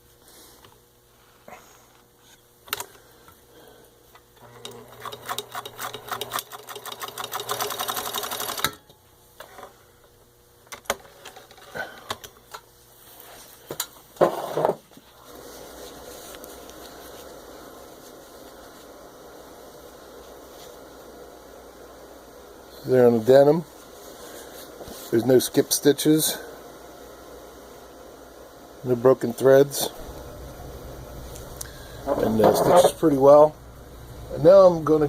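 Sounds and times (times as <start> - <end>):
sewing machine stitching: 4.4 - 8.7.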